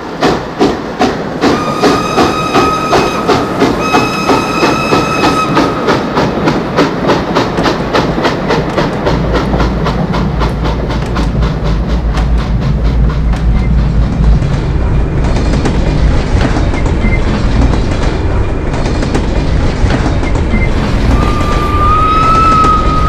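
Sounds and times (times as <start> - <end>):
train wheels rattling: 0.0 - 23.0
steam whistle blowing: 1.5 - 5.8, 21.1 - 23.0.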